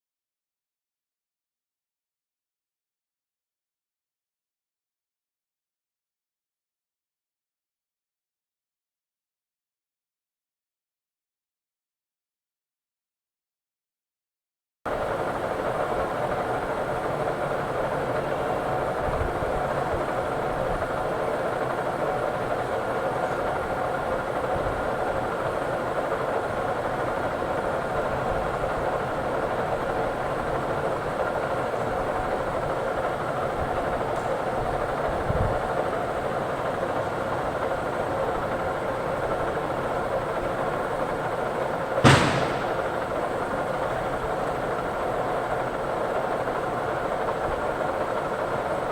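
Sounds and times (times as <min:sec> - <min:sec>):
sharp metallic knock: 0:42.0 - 0:43.2.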